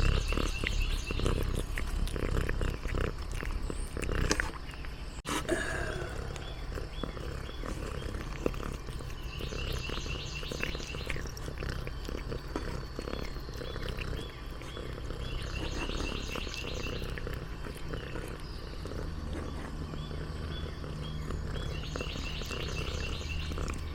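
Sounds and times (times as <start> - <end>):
low purr-like rumble: 0.0 - 4.6, 5.6 - 23.9
cat crunching food: 0.0 - 23.9.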